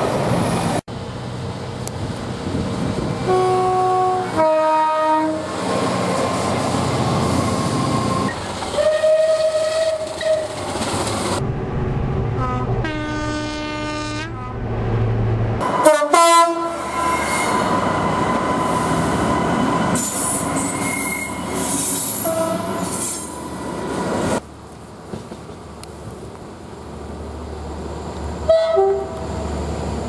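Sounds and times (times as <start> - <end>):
train horn: 3.2 - 5.6, 8.7 - 10.6, 12.4 - 14.6, 15.6 - 17.7, 22.2 - 22.8, 28.5 - 29.2
train wheels rumbling on rails: 5.1 - 30.0.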